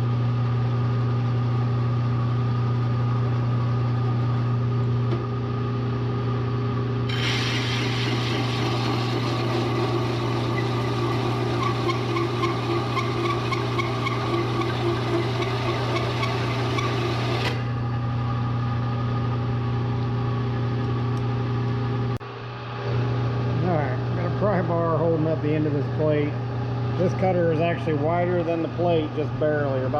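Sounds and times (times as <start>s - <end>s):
milling machine humming: 4.8s - 29.9s
cutter grinding into steel: 7.1s - 17.7s.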